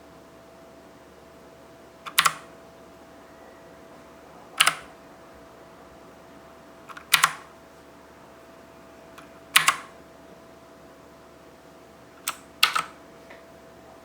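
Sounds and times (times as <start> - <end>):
faint steady hum: 0.0 - 14.0
mechanical keyboard clicks: 2.1 - 2.5, 4.6 - 4.9, 6.9 - 7.5, 9.2 - 9.9, 12.2 - 13.0.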